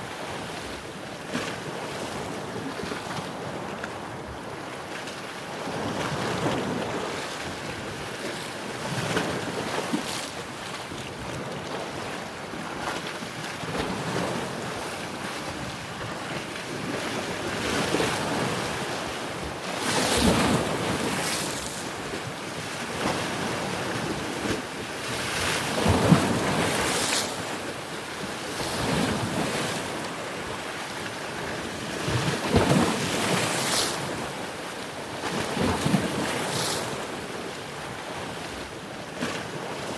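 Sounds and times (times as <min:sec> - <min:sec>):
continuous water wash: 0:14.6 - 0:37.8
waves breaking: 0:16.8 - 0:39.9.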